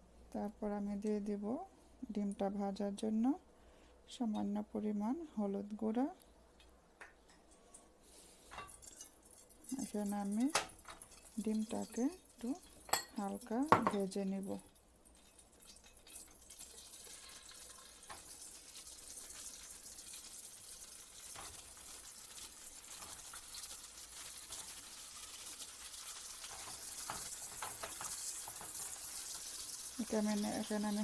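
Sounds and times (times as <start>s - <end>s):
eggs sizzling in oil: 7.3s - 31.0s.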